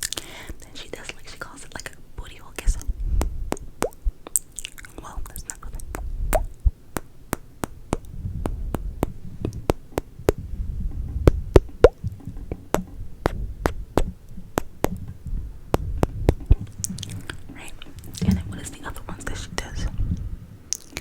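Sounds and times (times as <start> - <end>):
tongue clicks and kissing pops: 1.8 - 10.4, 11.3 - 17.4, 20.7 - 21.0
low rumble: 2.8 - 4.2, 5.2 - 6.9, 7.8 - 20.7.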